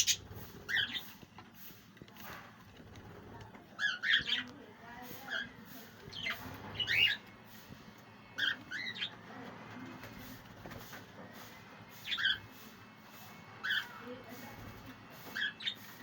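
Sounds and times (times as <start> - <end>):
budgerigars squawky chirps: 0.0 - 1.1.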